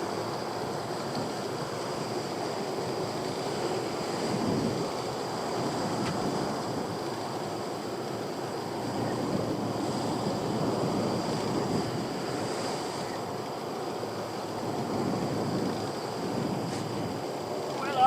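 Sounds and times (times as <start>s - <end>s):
sea water washing around boat: 0.0s - 18.0s
wind buffeting microphone: 0.0s - 18.0s.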